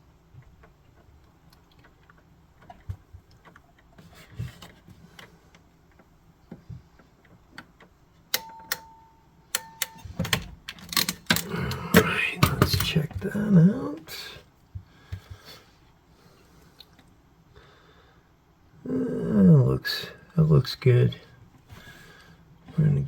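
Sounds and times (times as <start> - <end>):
small clicks and metallic rattles: 0.4 - 8.9, 9.5 - 13.0.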